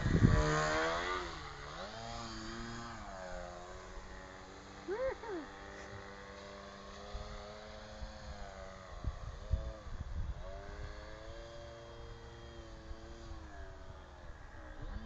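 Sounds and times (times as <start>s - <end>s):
wind buffeting microphone: 0.0s - 1.4s, 8.0s - 11.6s
model airplane motor and propeller: 0.0s - 15.0s.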